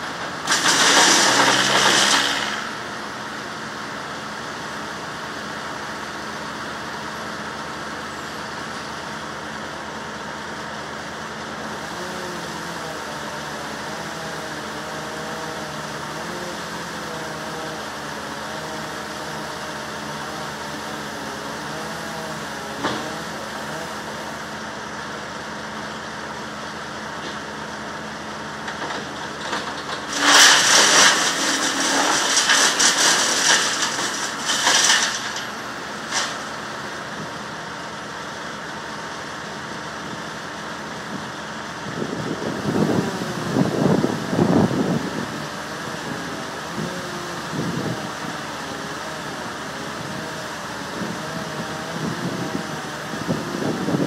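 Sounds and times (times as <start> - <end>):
engine running: 0.0 - 54.0
loud rushing crashing noise: 30.1 - 35.4.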